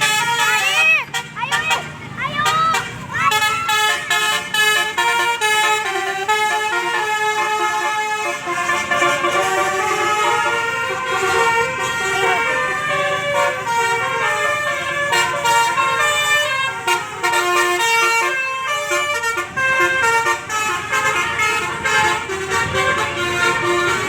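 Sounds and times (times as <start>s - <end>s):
bus horn playing a melody: 0.0s - 24.0s.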